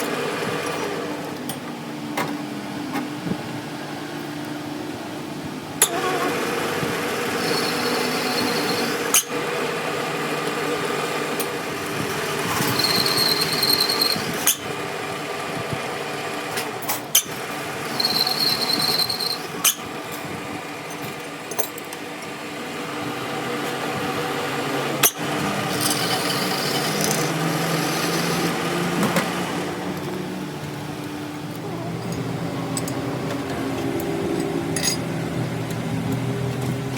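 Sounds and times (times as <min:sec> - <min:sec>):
steady mechanical hum: 0:00.0 - 0:36.9
power tool whining: 0:05.8 - 0:16.1, 0:17.1 - 0:21.3, 0:22.2 - 0:36.9.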